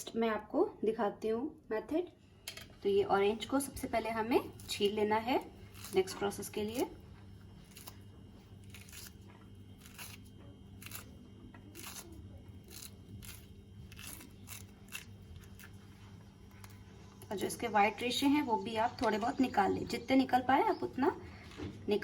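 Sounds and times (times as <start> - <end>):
low steady hum: 0.0 - 22.0
orange peel tearing: 4.5 - 6.9, 7.6 - 17.2.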